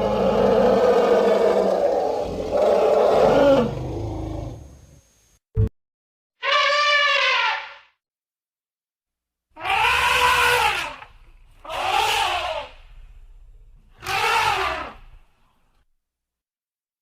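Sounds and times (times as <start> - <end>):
elephant trumpeting: 6.4 - 7.8, 9.6 - 12.8, 13.9 - 15.2.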